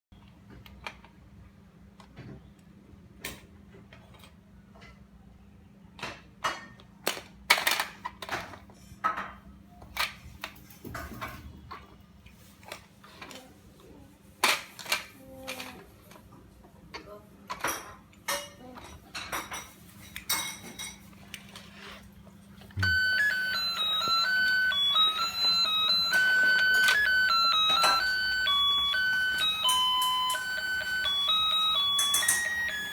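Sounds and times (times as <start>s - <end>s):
electronic beeping tune: 22.8s - 32.9s.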